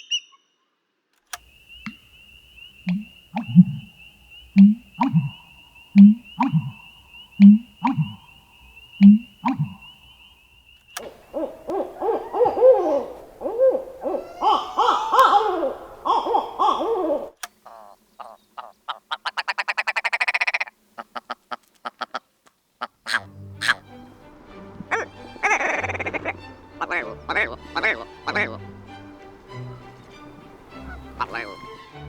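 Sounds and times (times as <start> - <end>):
short clipped pulses: 1.4 - 17.5
owls hooting and cackling: 1.5 - 21.3, 23.0 - 32.0
scattered clicks: 10.8 - 11.9.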